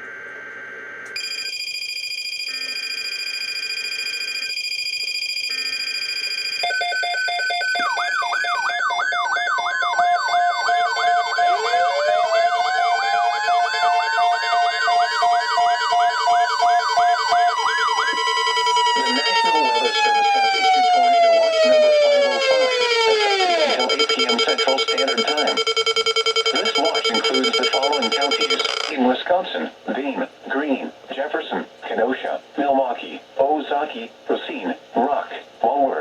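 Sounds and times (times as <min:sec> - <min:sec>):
steady electronic alarm tones: 0:00.5 - 0:29.0
fast warbling siren tone: 0:01.2 - 0:29.0
slowly rising siren wail: 0:07.6 - 0:24.6
pulsed beeping: 0:10.4 - 0:29.0.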